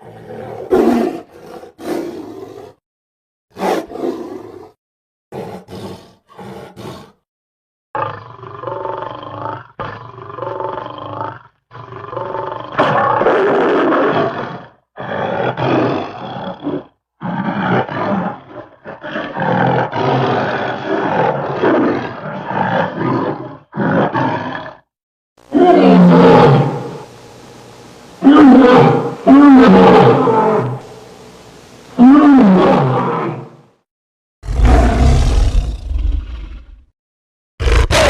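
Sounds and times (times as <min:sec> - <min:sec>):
big animal-like calls: 0:34.4 - 0:36.8.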